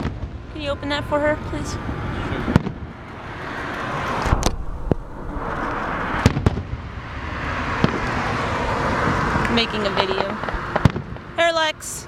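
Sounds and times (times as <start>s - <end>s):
fireworks bursting with sharp bangs: 4.2s - 8.0s, 10.8s - 11.2s.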